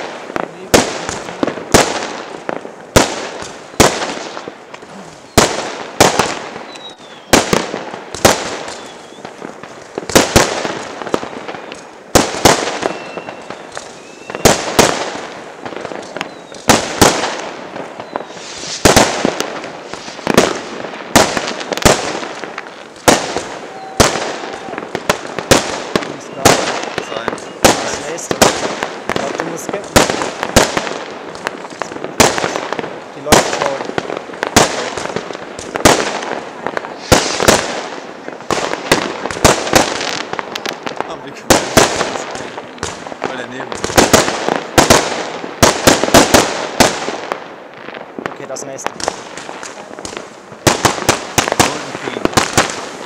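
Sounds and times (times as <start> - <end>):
fireworks bangs with crackle: 0.0 - 53.0
faint firework whistles: 3.4 - 5.6, 6.6 - 7.6, 8.6 - 9.4, 11.1 - 14.9, 16.0 - 16.8, 17.9 - 19.0, 23.3 - 25.1, 26.0 - 28.2, 36.8 - 37.6.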